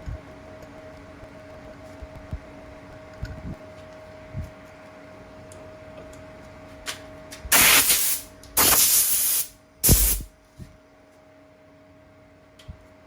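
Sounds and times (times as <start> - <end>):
compressed air blow gun hissing: 7.5 - 10.3.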